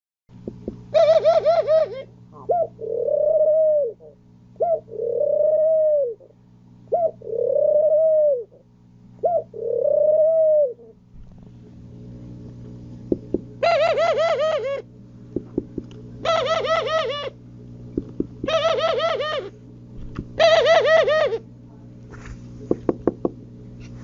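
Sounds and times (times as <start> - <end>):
faint low hum: 0.3 - 24.0
pigeon cooing: 0.9 - 8.6, 9.2 - 11.0, 13.6 - 14.9, 16.2 - 17.4, 18.4 - 19.5, 20.4 - 21.5.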